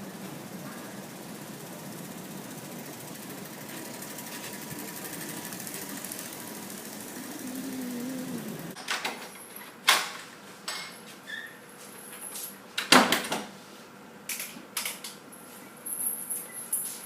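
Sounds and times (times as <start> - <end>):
low motor hum: 0.0 - 8.8.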